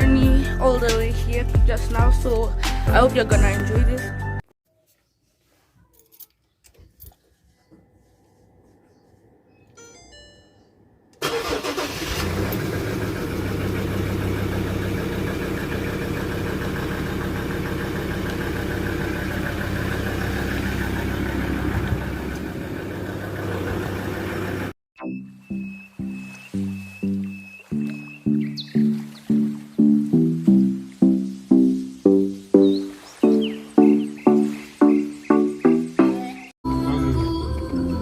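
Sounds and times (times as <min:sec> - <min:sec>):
music: 0:00.0 - 0:04.4, 0:25.0 - 0:38.0
vehicle engine running loudly: 0:12.2 - 0:24.7.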